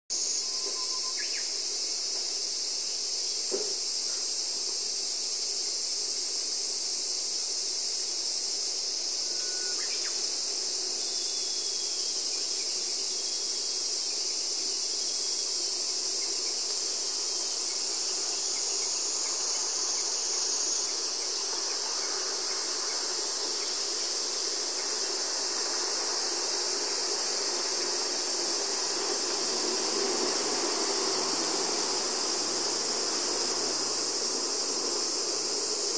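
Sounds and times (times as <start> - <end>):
insects chorus: 0.1 - 35.9
train rumbling slowly: 15.5 - 35.9.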